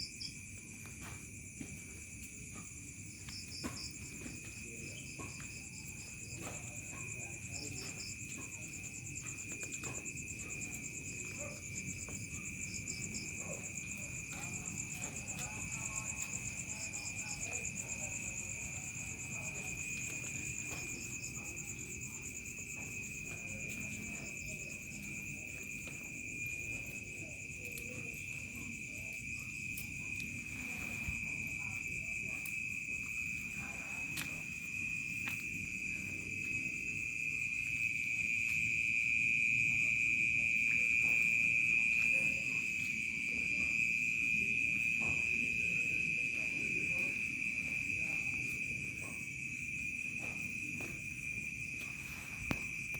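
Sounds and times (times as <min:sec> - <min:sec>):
crickets chirping: 0:00.0 - 0:52.9.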